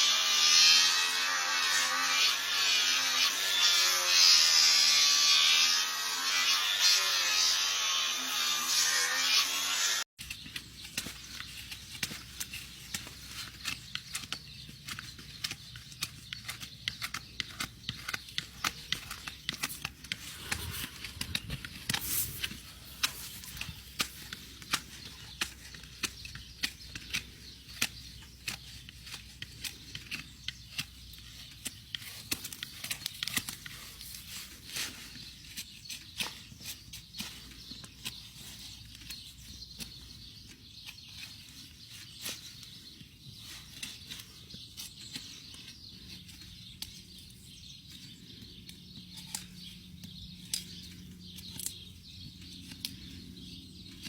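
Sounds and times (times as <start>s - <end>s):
power tool buzzing whine: 0.0s - 10.1s
hoof trimming clicks and crackles: 10.2s - 54.0s.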